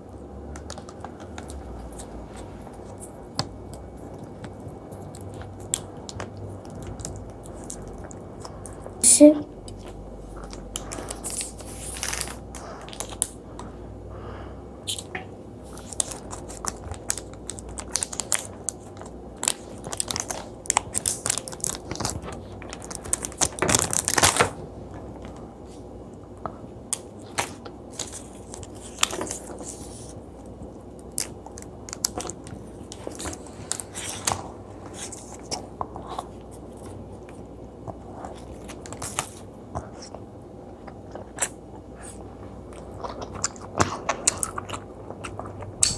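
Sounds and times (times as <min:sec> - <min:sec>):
sticky wet chewing: 0:09.6 - 0:13.7, 0:27.0 - 0:45.9.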